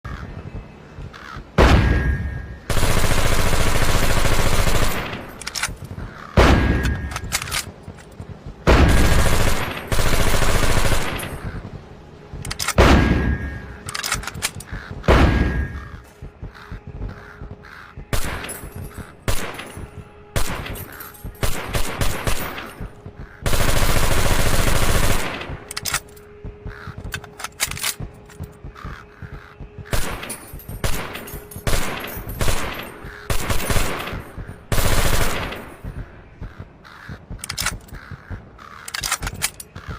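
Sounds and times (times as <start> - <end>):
submachine gun automatic bursts: 23.5 - 26.0.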